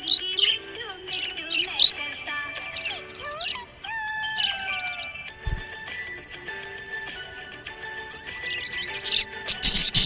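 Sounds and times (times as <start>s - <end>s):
light tinkling melody: 1.2s - 10.0s.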